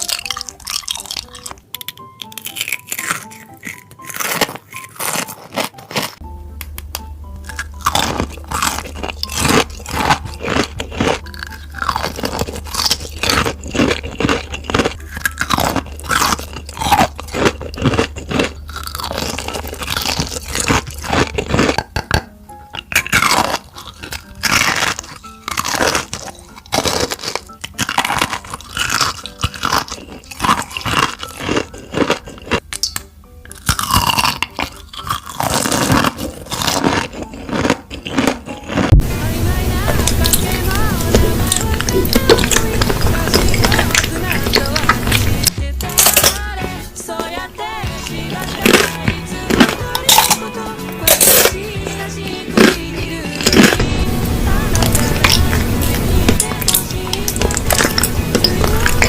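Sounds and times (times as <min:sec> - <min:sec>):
background music: 0:00.0 - 0:59.0
person chewing crunchy food: 0:00.0 - 0:59.0
low hum: 0:06.2 - 0:21.5, 0:38.9 - 0:59.0.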